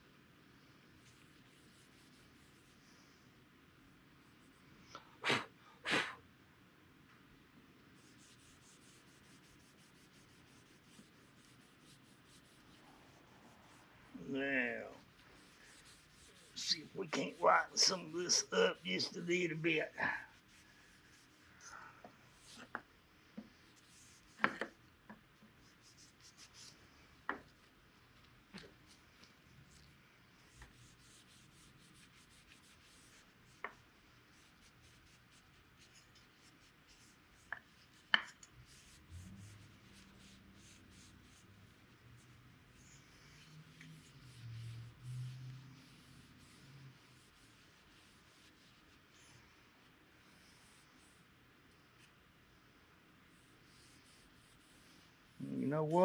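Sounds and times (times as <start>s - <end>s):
rubbing on wooden handle: 8.0s - 21.4s, 43.0s - 49.1s.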